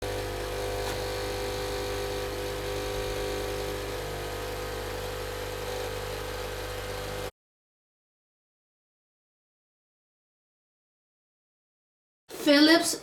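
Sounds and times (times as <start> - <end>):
coffee maker pump buzzing: 0.0 - 7.3.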